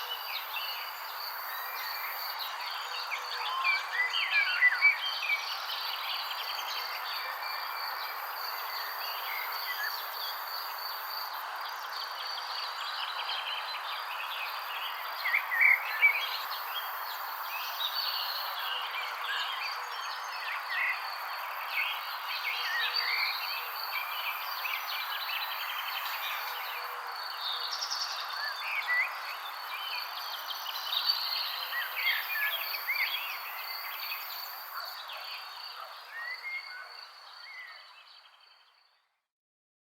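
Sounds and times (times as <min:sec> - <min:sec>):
songbirds chirping and singing: 0:12.3 - 0:38.6.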